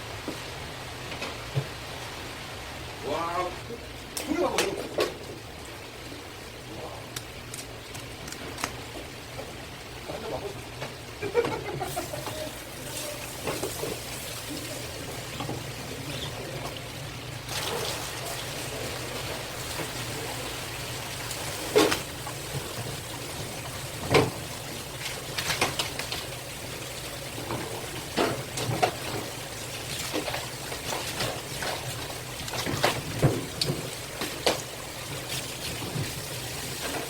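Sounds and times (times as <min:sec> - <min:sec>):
water trickling and splashing: 0:11.8 - 0:37.0.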